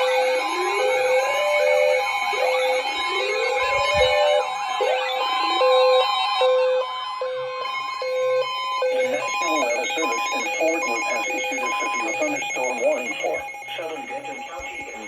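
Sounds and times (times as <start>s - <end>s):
wavering electronic tones: 0.0s - 6.8s, 8.2s - 15.0s
two-tone electronic beeps: 8.1s - 15.0s.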